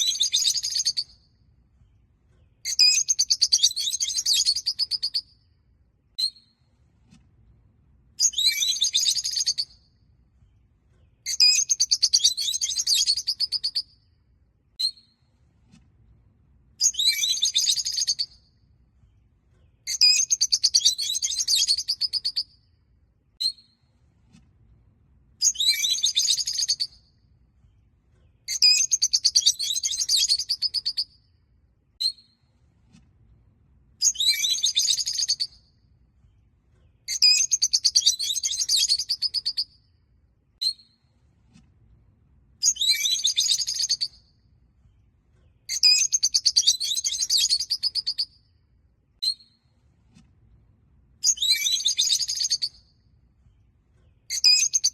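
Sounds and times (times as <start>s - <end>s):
short bird chirps: 0.0s - 1.2s, 2.4s - 5.4s, 8.2s - 9.9s, 11.0s - 14.0s, 16.8s - 18.5s, 19.6s - 22.6s, 25.4s - 27.1s, 28.2s - 31.2s, 34.0s - 35.7s, 36.8s - 39.8s, 42.6s - 44.3s, 45.4s - 48.5s, 51.2s - 53.0s, 54.0s - 54.9s.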